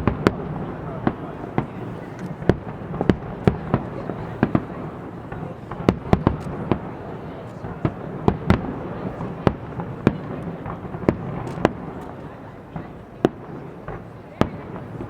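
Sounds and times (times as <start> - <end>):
background noise: 0.0 - 15.0
fireworks bursting: 0.0 - 15.0.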